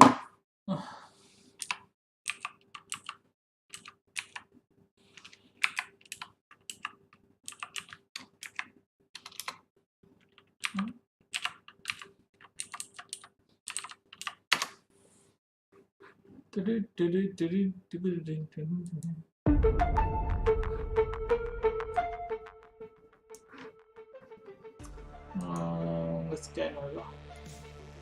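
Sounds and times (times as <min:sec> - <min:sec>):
keyboard typing clicks: 0:01.6 - 0:04.5, 0:05.2 - 0:09.6, 0:10.6 - 0:14.7.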